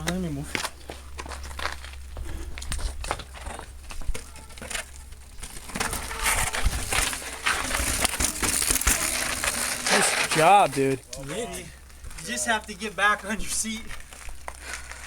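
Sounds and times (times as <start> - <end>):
bike tyres crunching on grit: 0.0 - 15.0.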